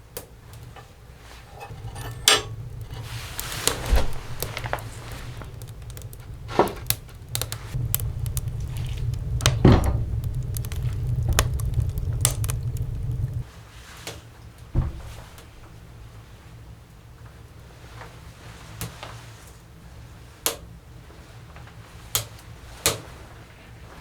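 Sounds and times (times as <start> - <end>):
objects knocking and clattering: 0.7 - 13.4
low rumble: 0.7 - 13.5.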